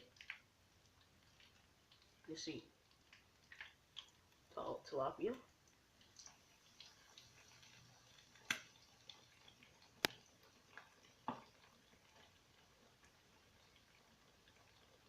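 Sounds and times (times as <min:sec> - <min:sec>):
fish frying in oil: 0:00.0 - 0:15.0
oil popping: 0:00.1 - 0:04.5, 0:05.6 - 0:15.0.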